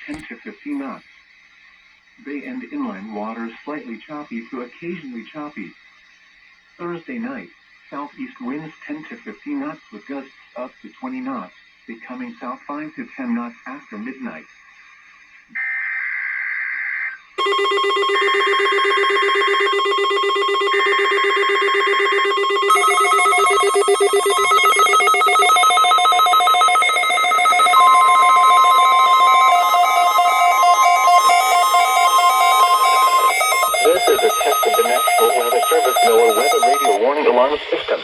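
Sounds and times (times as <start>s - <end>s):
electronic ringtone-like melody: 17.4s - 37.0s
electronic data bursts: 17.4s - 38.0s
steady electronic tone: 21.8s - 37.0s.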